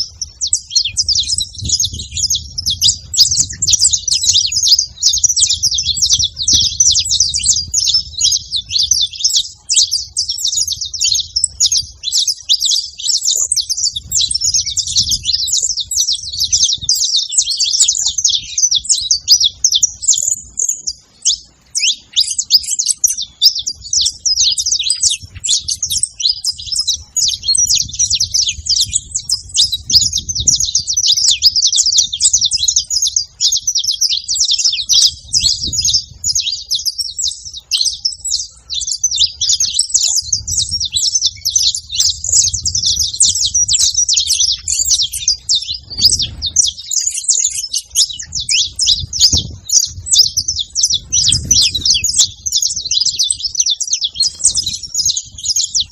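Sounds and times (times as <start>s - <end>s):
flock of finches singing: 0.0s - 55.9s.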